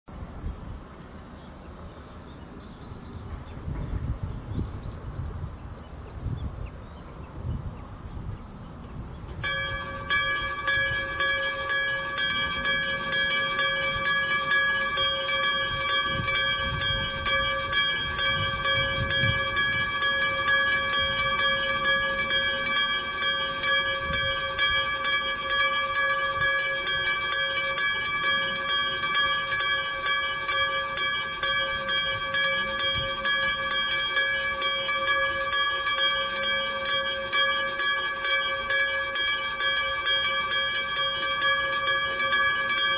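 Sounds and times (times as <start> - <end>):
level crossing warning bell: 9.3 - 42.9.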